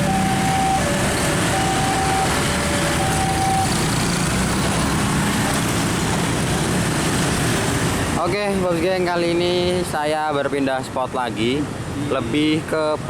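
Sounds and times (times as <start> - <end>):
level crossing alarm two tones: 0.0 - 4.0.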